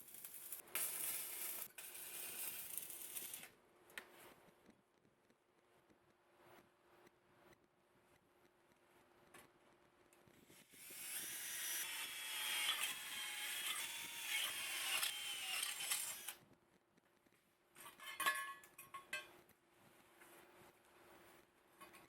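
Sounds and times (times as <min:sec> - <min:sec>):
power tool cutting: 0:10.8 - 0:16.4.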